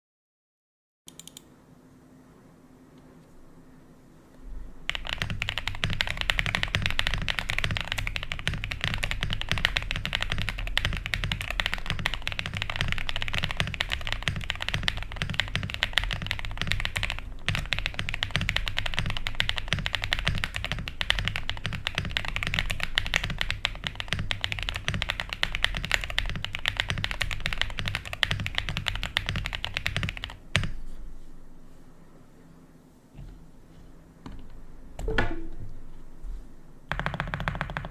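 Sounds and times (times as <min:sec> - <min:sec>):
mechanical keyboard typing: 0:01.1 - 0:01.4, 0:04.9 - 0:30.8, 0:36.9 - 0:37.9.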